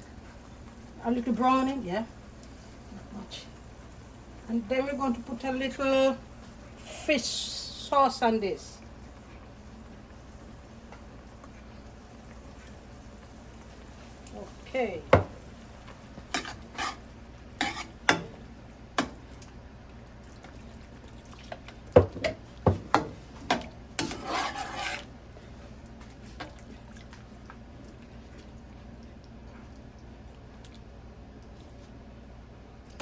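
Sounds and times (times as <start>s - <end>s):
spoon scraping a pot: 16.3s - 18.2s, 24.0s - 25.1s.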